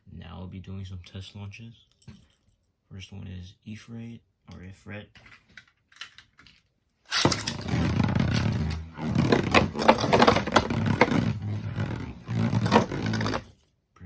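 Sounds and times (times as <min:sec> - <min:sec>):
spinning top launch: 0:07.1 - 0:08.9
spinning top knocking walls: 0:07.1 - 0:13.5
spinning top scraping plastic: 0:07.1 - 0:13.5.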